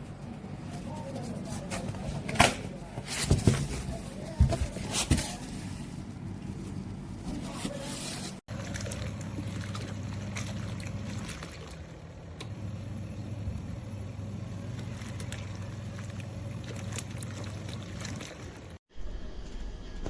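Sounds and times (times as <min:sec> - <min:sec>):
washing machine motor humming: 0:03.8 - 0:19.2
water churning in tub: 0:08.5 - 0:12.4, 0:14.6 - 0:18.8.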